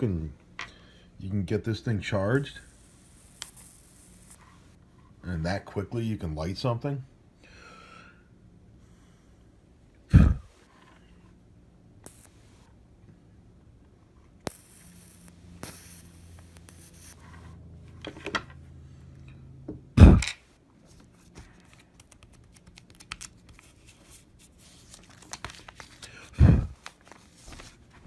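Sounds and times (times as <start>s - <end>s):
scratchy handling rustle: 26.8s - 28.0s.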